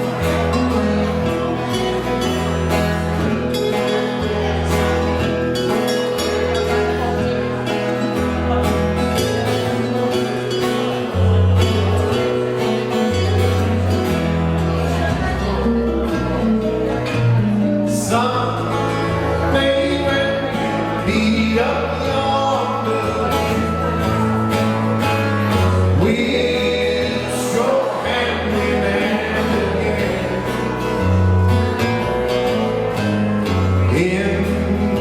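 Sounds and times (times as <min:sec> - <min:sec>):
slow country song with guitar: 0:00.0 - 0:35.0
steady bass line: 0:00.0 - 0:35.0.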